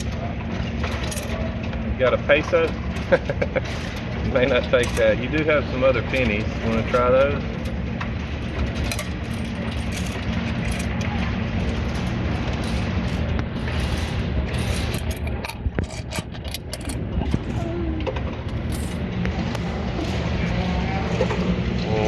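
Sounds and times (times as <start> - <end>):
low motor hum: 0.0 - 22.0
coins clattering through sorting drum: 0.8 - 1.4, 2.3 - 19.1.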